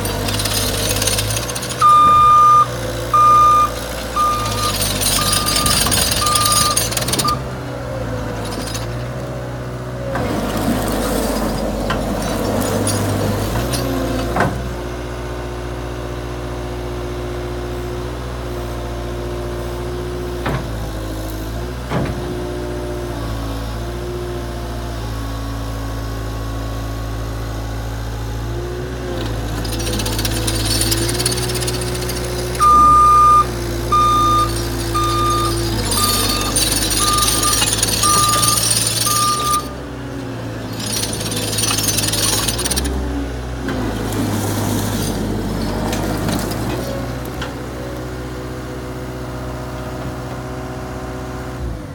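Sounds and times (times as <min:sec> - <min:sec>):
diesel engine running: 0:00.0 - 0:51.9
reverse alarm beeping: 0:01.8 - 0:07.5, 0:32.6 - 0:39.8.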